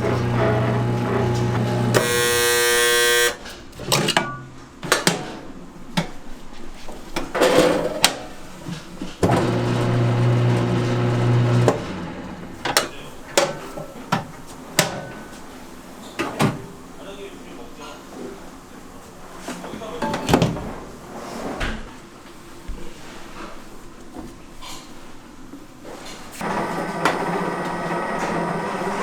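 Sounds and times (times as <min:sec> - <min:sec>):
short loud buzz: 0:00.0 - 0:03.4
kitchen machine motor humming: 0:00.0 - 0:03.5, 0:09.2 - 0:13.2, 0:26.4 - 0:29.0.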